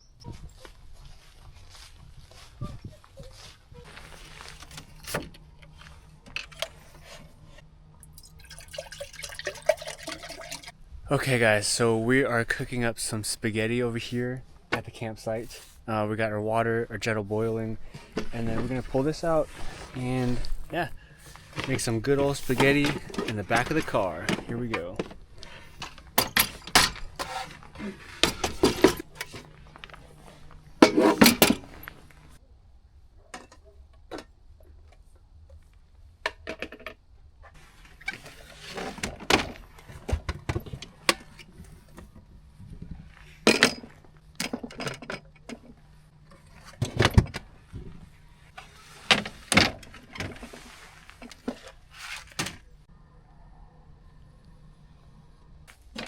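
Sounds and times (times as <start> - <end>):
faint low hum: 37.1 - 56.0.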